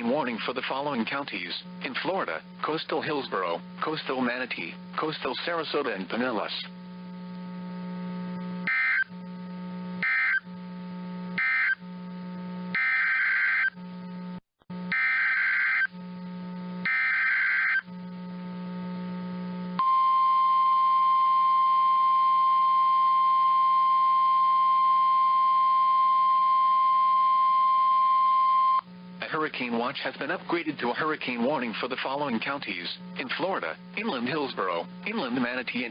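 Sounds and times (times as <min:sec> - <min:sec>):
steady alarm tone: 0:08.6 - 0:09.1, 0:10.0 - 0:10.5, 0:11.4 - 0:11.8, 0:12.7 - 0:13.8, 0:14.9 - 0:16.0, 0:16.8 - 0:17.9
warbling data tone bursts: 0:08.6 - 0:09.1, 0:10.0 - 0:10.5, 0:11.4 - 0:11.8, 0:12.7 - 0:13.8, 0:14.9 - 0:15.9, 0:16.8 - 0:17.9.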